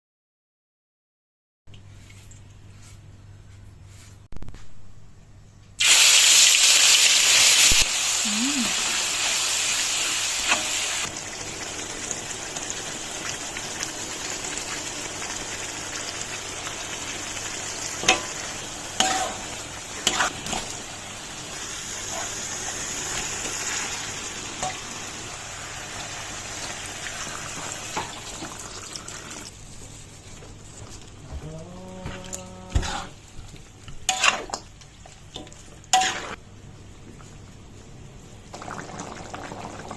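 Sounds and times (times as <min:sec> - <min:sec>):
food sizzling in a pan: 0:05.8 - 0:29.6, 0:32.7 - 0:36.4.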